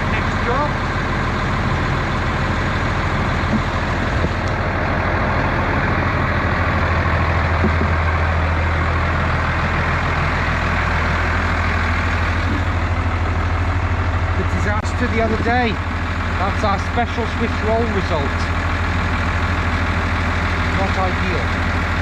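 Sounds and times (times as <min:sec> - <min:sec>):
heavy vehicle engine droning: 0:00.0 - 0:22.0.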